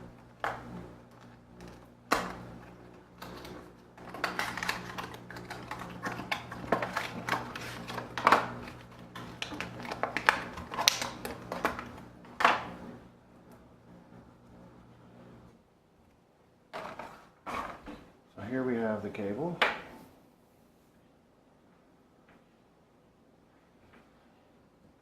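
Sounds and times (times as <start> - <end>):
packaging crinkling and clicking: 0.2 - 12.6
packaging snaps: 0.4 - 12.6.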